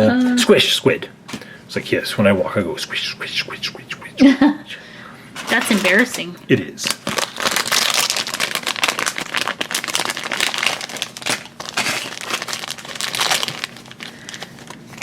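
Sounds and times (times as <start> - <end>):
plastic packaging crinkling and tearing: 5.4 - 15.0.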